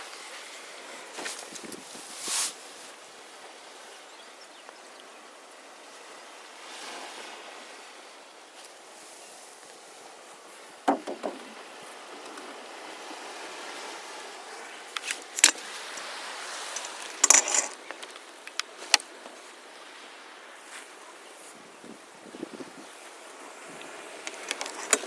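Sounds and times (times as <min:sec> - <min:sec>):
wind: 0:00.0 - 0:25.0
surf washing: 0:05.1 - 0:25.0
sharp clinks and knocks: 0:15.0 - 0:15.6, 0:16.7 - 0:19.0, 0:24.3 - 0:25.0.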